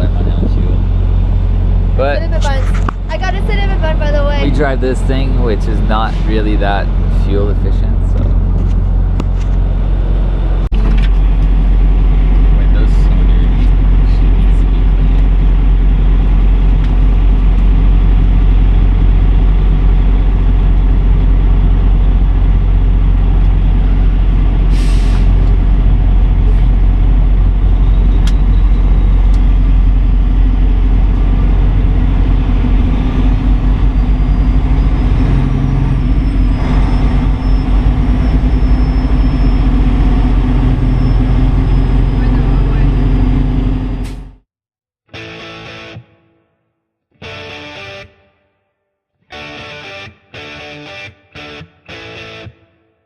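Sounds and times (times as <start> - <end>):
truck diesel engine drone: 0.0 - 44.4
short air hiss: 24.7 - 25.3.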